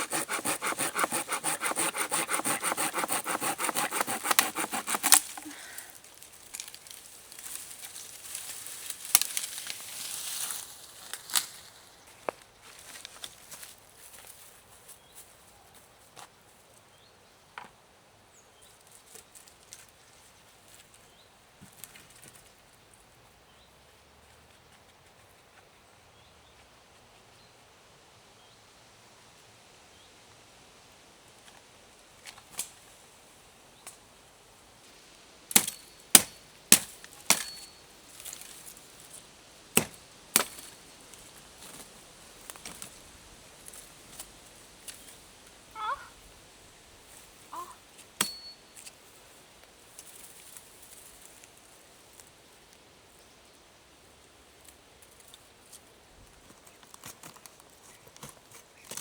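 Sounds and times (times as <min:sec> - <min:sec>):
tool striking wood: 0:00.0 - 0:05.2, 0:35.5 - 0:37.6.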